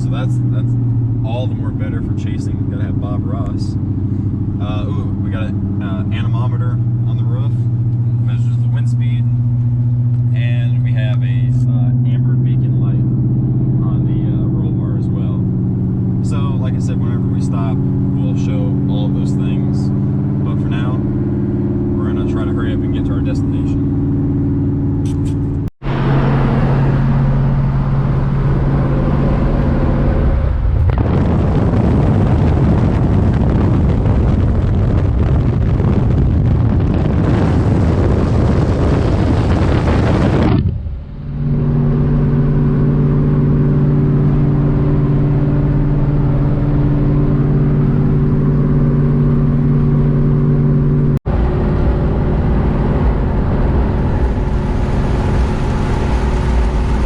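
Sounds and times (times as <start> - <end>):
engine and road drone: 0.0 - 57.0
loud rushing noise: 51.3 - 57.0.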